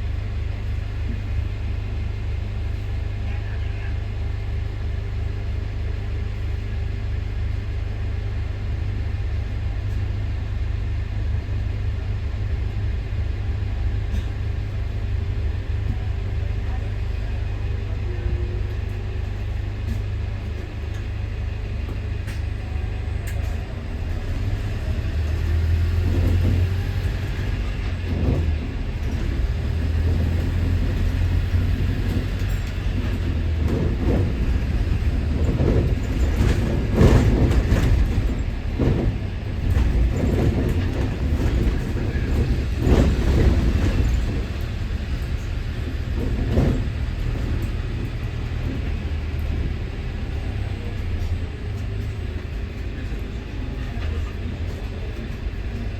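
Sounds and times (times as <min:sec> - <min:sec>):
bus engine and road rumble: 0:00.0 - 0:55.9
knocks and rattles: 0:23.3 - 0:49.7.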